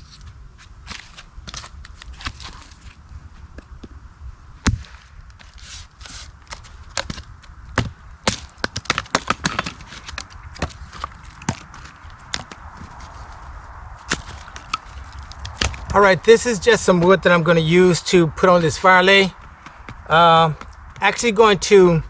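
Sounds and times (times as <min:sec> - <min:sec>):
wood chopping knocks and cracks: 0:04.6 - 0:05.5, 0:06.4 - 0:12.7, 0:14.0 - 0:16.0.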